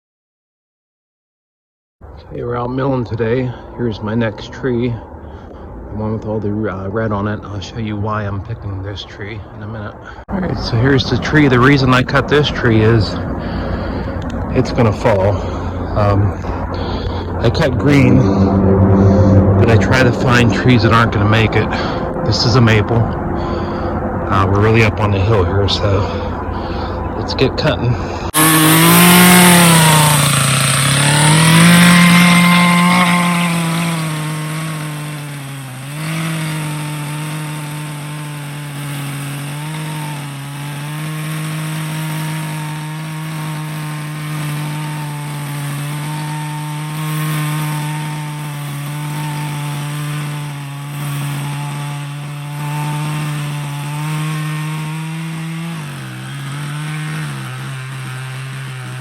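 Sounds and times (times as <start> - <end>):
chainsaw cutting wood: 28.3 - 59.0.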